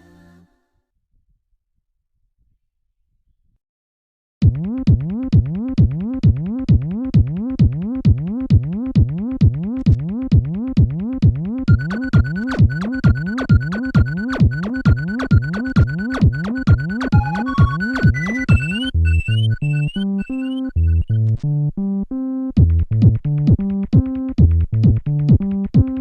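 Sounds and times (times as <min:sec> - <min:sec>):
steady beat: 0:11.7 - 0:18.9
high beeping tone: 0:11.7 - 0:21.2
electronic music with synth: 0:11.7 - 0:21.3.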